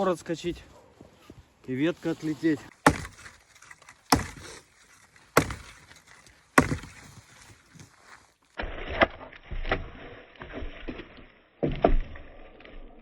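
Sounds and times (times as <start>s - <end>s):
axe chopping branch: 2.7s - 11.0s.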